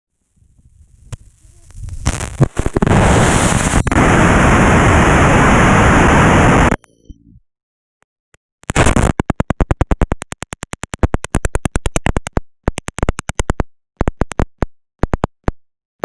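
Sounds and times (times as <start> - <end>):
static crackles and pops: 0.1 - 7.0, 8.6 - 15.6
roar of static noise: 0.4 - 6.8.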